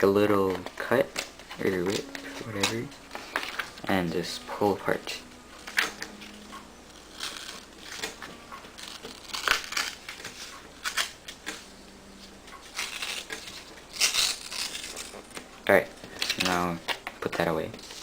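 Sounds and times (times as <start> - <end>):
paper tearing: 5.7 - 11.6, 12.6 - 15.4.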